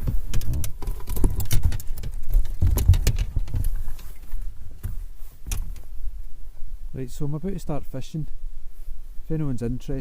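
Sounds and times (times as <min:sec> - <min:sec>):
footsteps clicking and knocking: 0:00.0 - 0:05.9.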